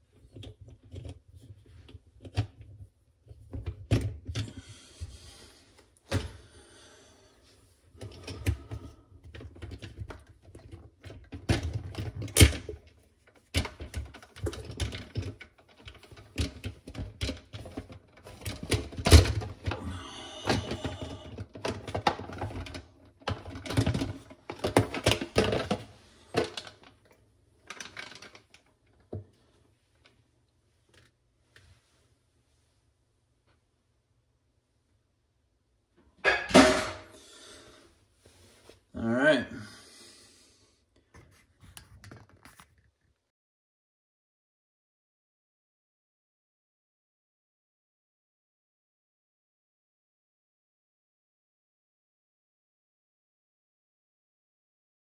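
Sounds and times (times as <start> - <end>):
plastic parts clicking and scraping: 0.0 - 5.1, 8.0 - 19.8, 20.4 - 29.2.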